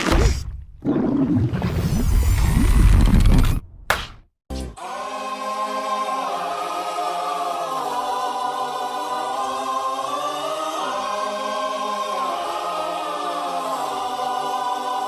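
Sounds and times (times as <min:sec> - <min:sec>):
wordless choir singing chords: 0:04.8 - 0:15.0.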